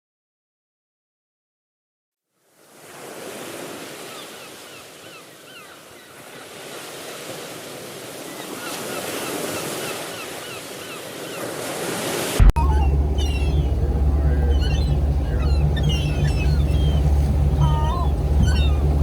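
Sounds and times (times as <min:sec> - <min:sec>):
surf: 0:02.6 - 0:19.0
gulls calling: 0:03.6 - 0:06.6, 0:07.7 - 0:19.0
loud low steady rumble: 0:12.5 - 0:19.0.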